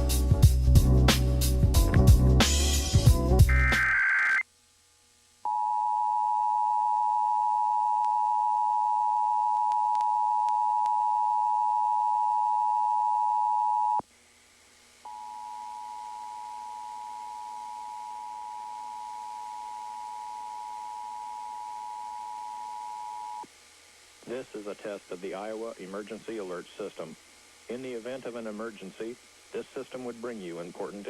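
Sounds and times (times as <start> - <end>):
quieter steady tone: 5.4 - 14.0, 15.0 - 23.5.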